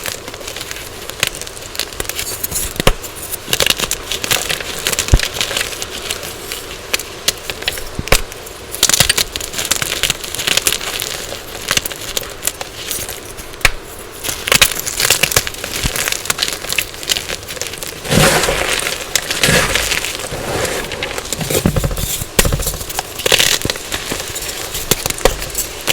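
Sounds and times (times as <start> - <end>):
chalk crunching and crumbling: 8.9 - 25.9.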